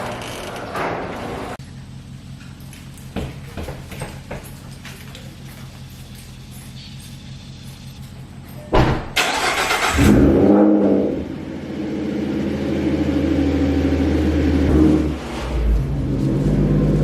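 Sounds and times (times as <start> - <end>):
car starter cranking: 9.1 - 10.5
car engine revving and idling: 9.2 - 17.0.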